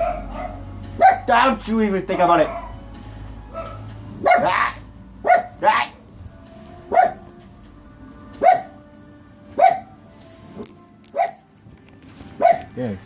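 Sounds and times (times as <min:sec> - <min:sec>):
dog barking: 0:00.0 - 0:01.3, 0:02.1 - 0:02.8, 0:03.5 - 0:06.0, 0:06.9 - 0:07.2, 0:08.4 - 0:08.8, 0:09.5 - 0:10.0, 0:11.1 - 0:11.4, 0:12.4 - 0:12.8.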